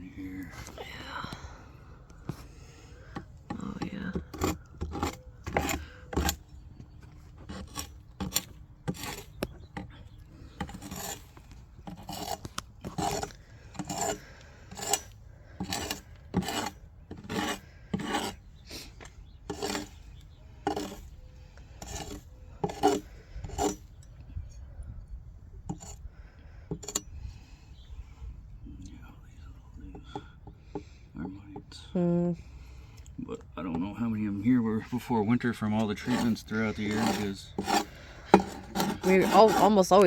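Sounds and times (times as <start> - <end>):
rasping scrapes on beehive parts: 2.2 - 24.0, 25.7 - 27.5, 33.8 - 40.0.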